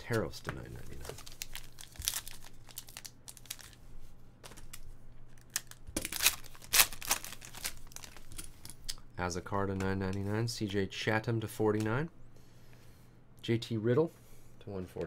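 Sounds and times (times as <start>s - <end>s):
card pack wrappers crinkling: 0.0s - 3.8s, 4.4s - 8.5s
cards being handled: 4.4s - 8.5s.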